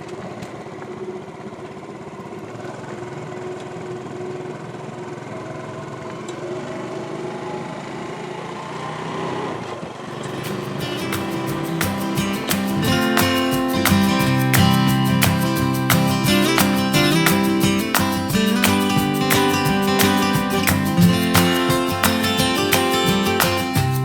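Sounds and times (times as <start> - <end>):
small vehicle engine running: 0.0 - 13.2.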